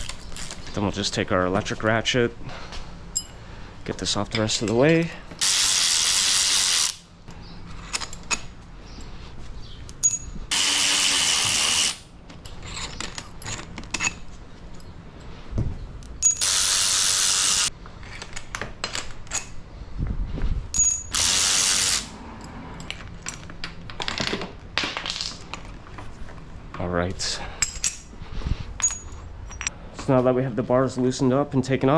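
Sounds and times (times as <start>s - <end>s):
tools and bolts clinking: 3.1s - 6.9s, 7.6s - 9.2s, 9.9s - 15.3s, 16.1s - 19.6s, 20.7s - 25.8s, 27.4s - 28.2s, 28.8s - 29.8s
electric ratchet whirring: 5.4s - 7.1s, 10.5s - 12.1s, 16.2s - 17.7s, 21.0s - 22.2s.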